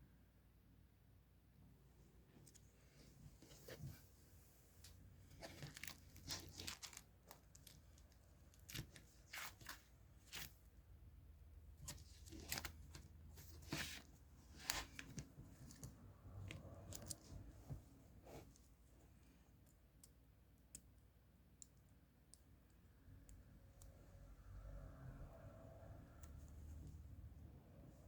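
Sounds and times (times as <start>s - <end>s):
paper rustling and tearing: 5.4s - 10.6s.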